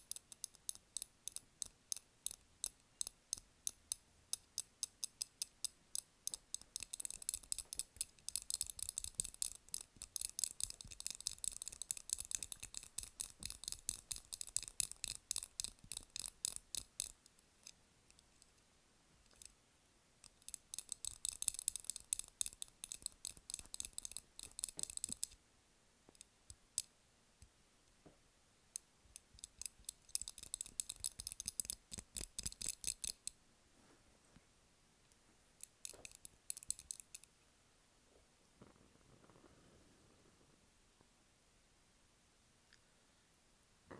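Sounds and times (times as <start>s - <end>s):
scattered clicks: 4.6s - 18.2s, 20.2s - 25.4s, 28.8s - 33.4s, 35.6s - 37.3s
rapid tapping on candles: 29.1s - 33.1s.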